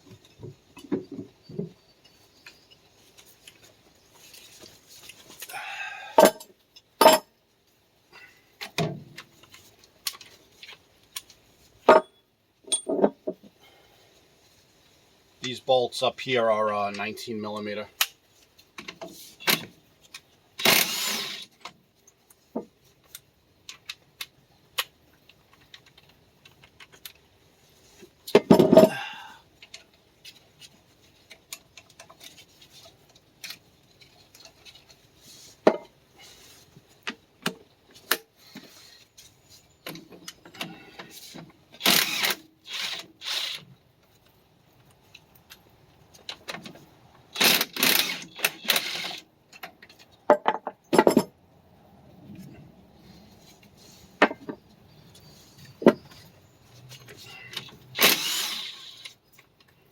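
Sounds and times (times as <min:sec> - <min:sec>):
metal tools clinking: 0:06.2 - 0:07.3, 0:11.9 - 0:13.2
metal rattling bursts: 0:57.9 - 0:59.1.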